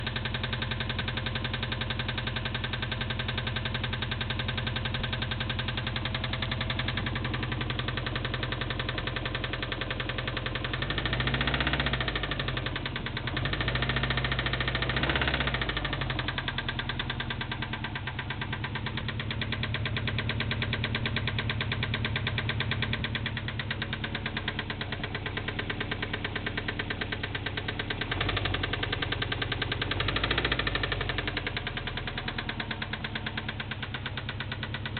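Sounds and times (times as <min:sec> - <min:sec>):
car engine idling with knock: 0:00.0 - 0:34.9
engine revving: 0:10.7 - 0:18.5, 0:27.9 - 0:34.9.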